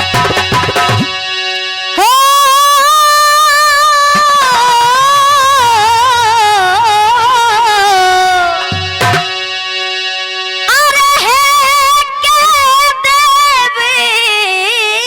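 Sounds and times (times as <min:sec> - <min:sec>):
drum stroke: 0:00.0 - 0:01.2
instrumental drone: 0:00.0 - 0:11.7.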